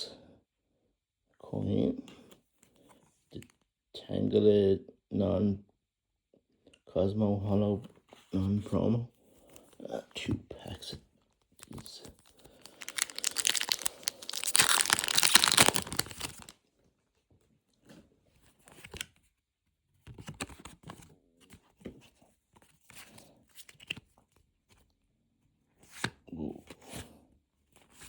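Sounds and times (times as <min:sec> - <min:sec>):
wrapper and cards rustling: 0:11.6 - 0:16.5
foil wrapper tearing: 0:12.3 - 0:16.5.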